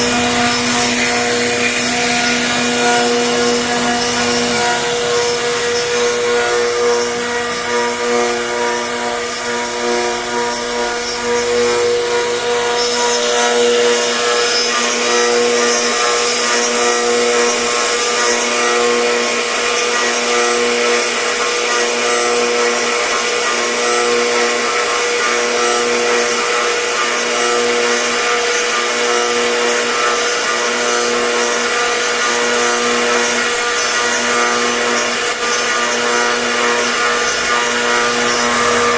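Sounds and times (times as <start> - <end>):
bit cutting wood: 0.0 - 38.9
router spindle whine: 0.0 - 38.9.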